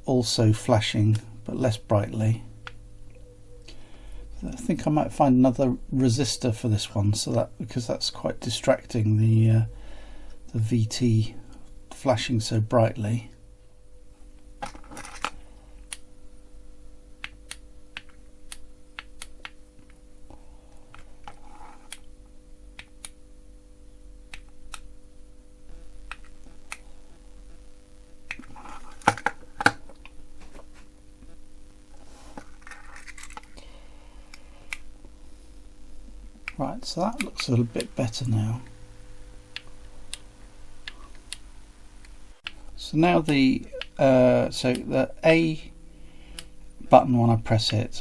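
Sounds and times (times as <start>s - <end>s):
faint steady hum: 0.0s - 48.0s
clicks and rustling of small parts: 14.6s - 15.4s, 32.3s - 33.6s.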